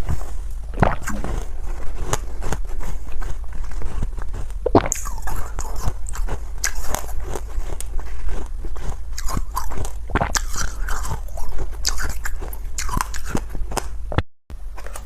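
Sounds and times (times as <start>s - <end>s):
steady low hum: 0.0s - 15.0s
person crunching ice: 0.8s - 13.8s.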